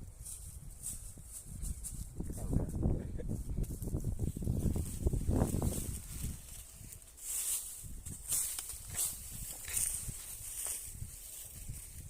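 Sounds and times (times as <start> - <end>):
wind buffeting microphone: 0.0 - 12.0
rustling hiss: 3.7 - 12.0.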